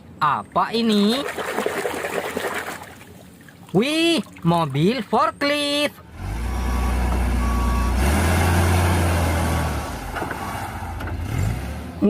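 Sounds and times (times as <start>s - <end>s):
forklift engine rumbling: 4.8s - 12.0s
faint reversing beeps: 6.4s - 8.1s.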